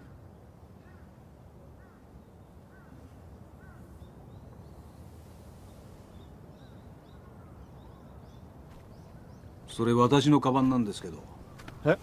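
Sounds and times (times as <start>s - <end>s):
small birds chirping: 5.7s - 12.0s.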